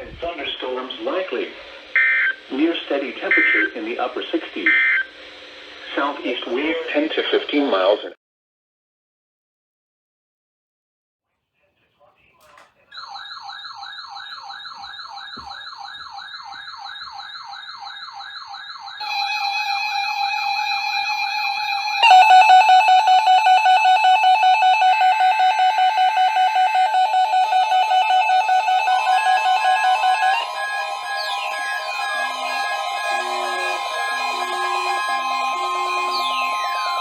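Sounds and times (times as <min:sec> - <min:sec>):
steady alarm tone: 0:00.0 - 0:07.4, 0:12.9 - 0:37.0
rapidly pulsing beep: 0:01.1 - 0:07.0, 0:13.0 - 0:37.0
fast warbling siren tone: 0:13.0 - 0:37.0.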